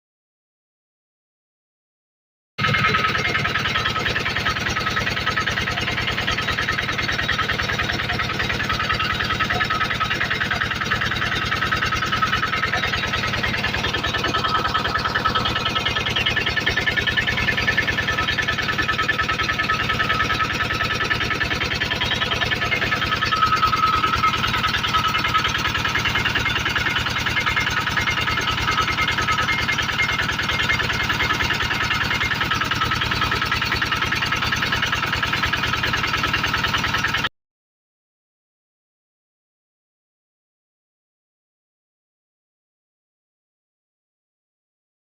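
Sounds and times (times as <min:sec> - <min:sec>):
engine running steadily: 0:02.6 - 0:37.3.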